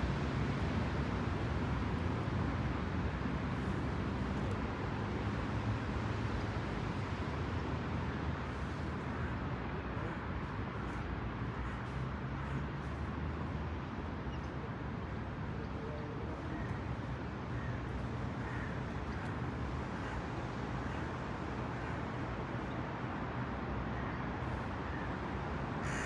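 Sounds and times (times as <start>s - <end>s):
distant traffic rumble: 0.0s - 26.0s.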